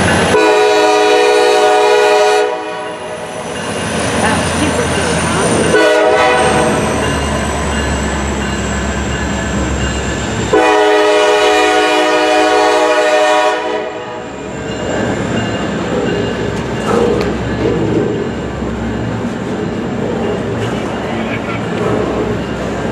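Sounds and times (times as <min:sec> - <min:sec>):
train rumbling past: 0:00.0 - 0:22.9
locomotive air horn blast: 0:00.3 - 0:03.1, 0:05.7 - 0:06.9, 0:10.5 - 0:14.2.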